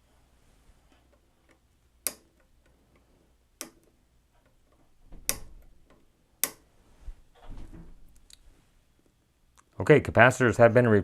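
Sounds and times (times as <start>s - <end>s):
side cutters snapping wire leads: 4.7s - 6.6s.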